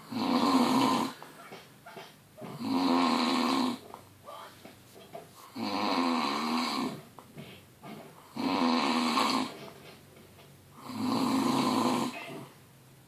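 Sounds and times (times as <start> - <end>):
loud snoring: 0.0 - 1.2, 2.5 - 3.8, 5.4 - 7.0, 8.2 - 9.6, 10.8 - 12.5.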